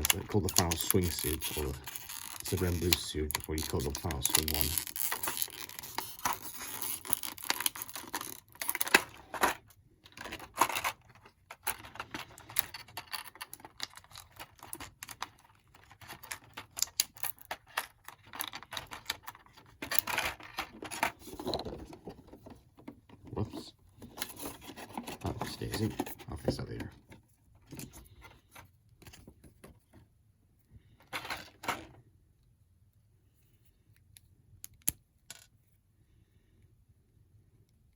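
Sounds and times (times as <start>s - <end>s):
plastic toy parts clicking: 10.1s - 21.1s.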